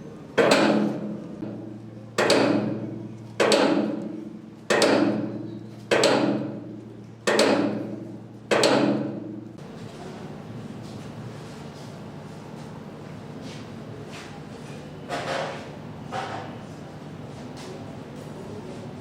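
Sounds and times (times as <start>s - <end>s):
sharp machine knock: 0.4s - 9.5s.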